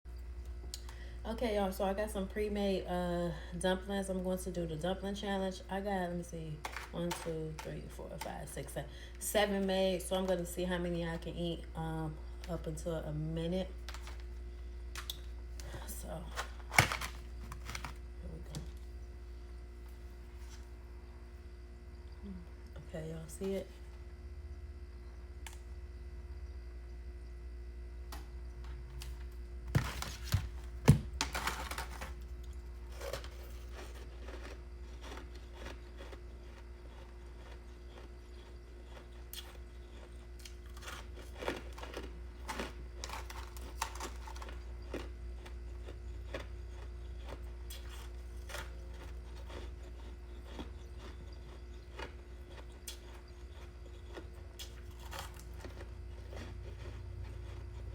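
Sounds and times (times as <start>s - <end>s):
steady low hum: 0.0s - 57.9s
chewing crunchy ice: 16.3s - 18.8s, 31.2s - 57.9s.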